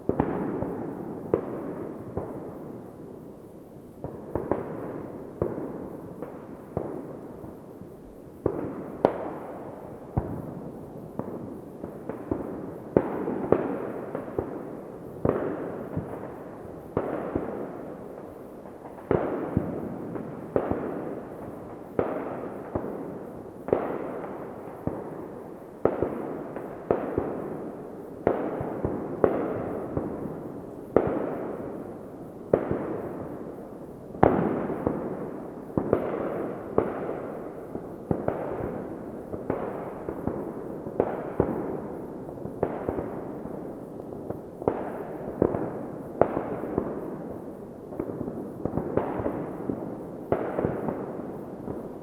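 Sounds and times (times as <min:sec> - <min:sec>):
fireworks crackle and rumble: 0:00.0 - 0:52.0
fireworks bangs: 0:18.8 - 0:31.8, 0:32.5 - 0:52.0.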